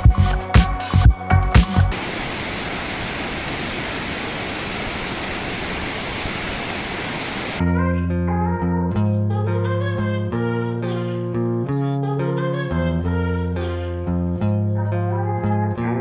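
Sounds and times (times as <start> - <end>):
music with bass and guitar: 0.0 - 1.9, 7.6 - 16.0
waterfall rushing: 1.9 - 7.6.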